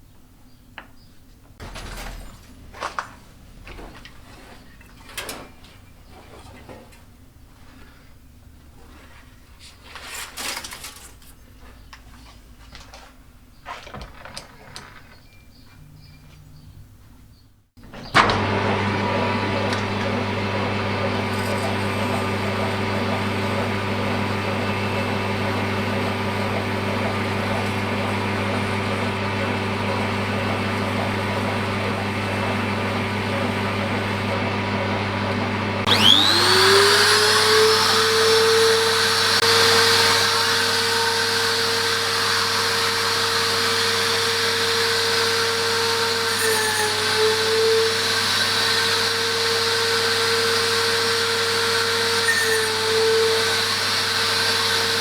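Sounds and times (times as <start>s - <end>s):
grinder motor whine: 17.8s - 55.0s
machine humming: 17.8s - 55.0s.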